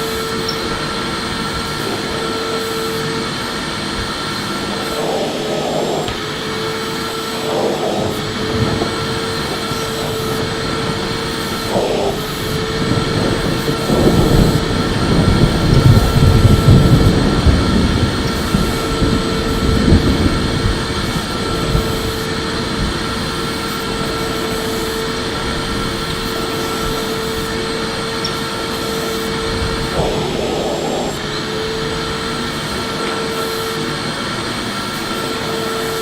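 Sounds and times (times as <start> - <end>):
vacuum cleaner running: 0.0 - 36.0
uneven low rumbling: 0.1 - 24.6.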